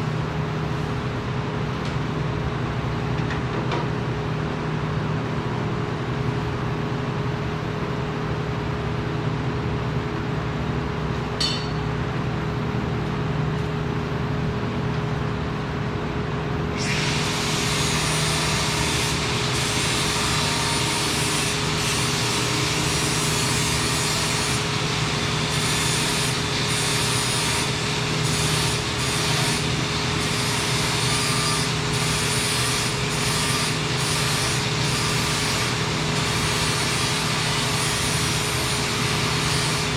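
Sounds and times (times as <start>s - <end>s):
steady machine hum: 0.0s - 39.9s
loud welding hiss: 16.8s - 39.9s.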